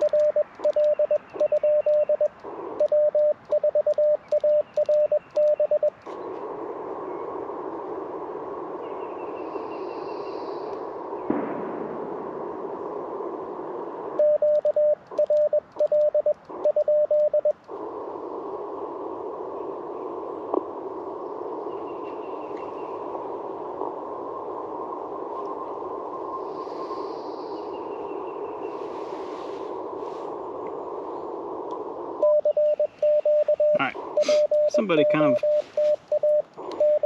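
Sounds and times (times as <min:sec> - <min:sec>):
morse code beeps: 0:00.0 - 0:06.0, 0:14.2 - 0:17.6, 0:32.2 - 0:37.0
radio band noise hiss: 0:00.0 - 0:37.0.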